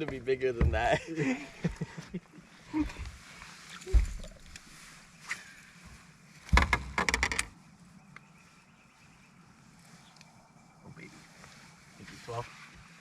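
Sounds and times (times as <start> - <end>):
dull thump: 0.6 - 1.0, 6.5 - 7.1.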